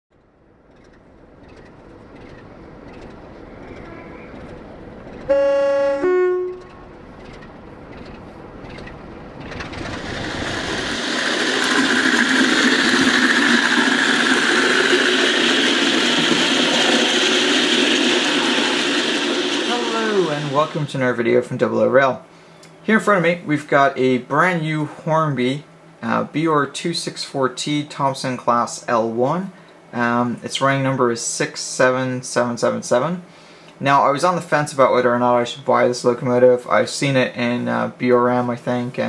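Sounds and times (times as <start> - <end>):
train running noise: 0.7 - 21.1
two-note train horn: 5.3 - 6.9.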